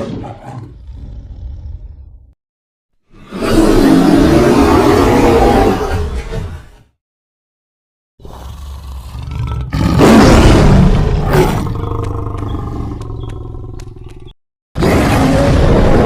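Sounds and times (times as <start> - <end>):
tiger roaring: 3.2 - 6.3, 8.2 - 13.8.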